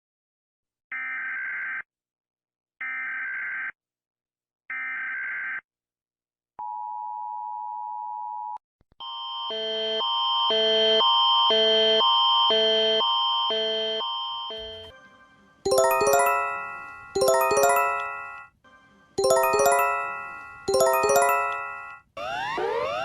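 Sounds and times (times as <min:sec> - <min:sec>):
alarm with alternating tones: 0:09.0 - 0:14.9, 0:15.7 - 0:18.5, 0:19.2 - 0:23.0.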